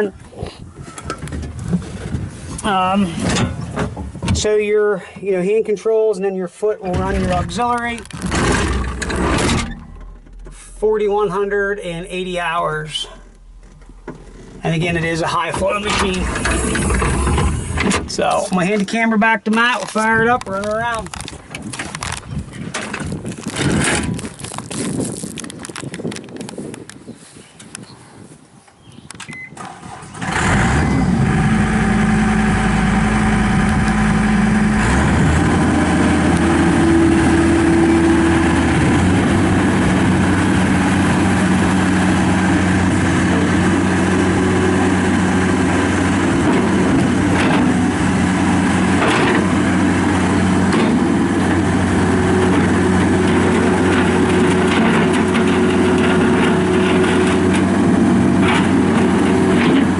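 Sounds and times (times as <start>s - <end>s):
diesel engine starting and running: 6.8s - 24.8s, 29.3s - 59.9s.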